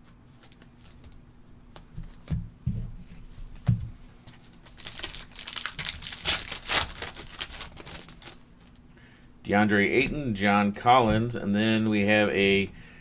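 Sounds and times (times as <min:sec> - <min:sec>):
wrapper crinkling and tearing: 0:04.5 - 0:08.4.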